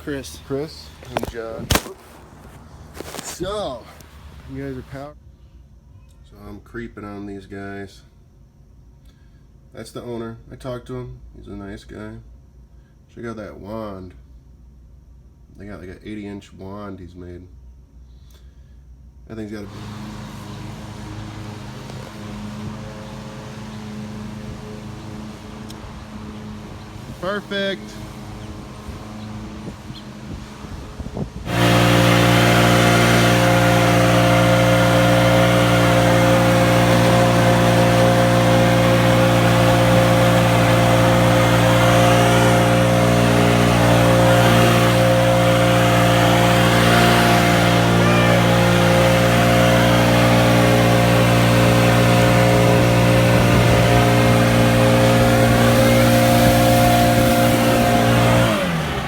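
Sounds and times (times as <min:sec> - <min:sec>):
small petrol engine running: 0:00.0 - 0:05.1, 0:19.6 - 0:59.0.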